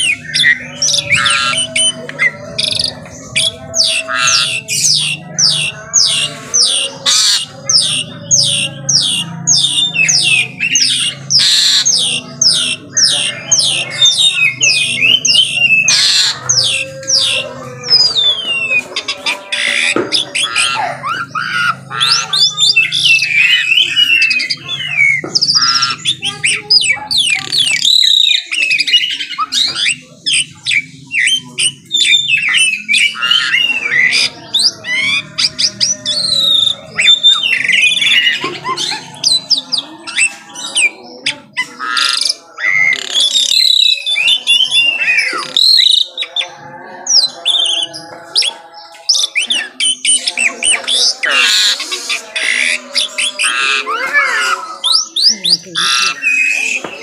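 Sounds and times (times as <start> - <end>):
starling singing: 0.0 - 57.0.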